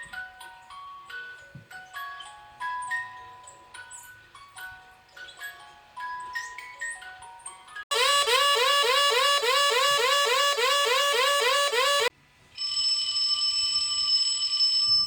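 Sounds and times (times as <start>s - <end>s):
steady multi-pitch alert tone: 7.9s - 12.1s.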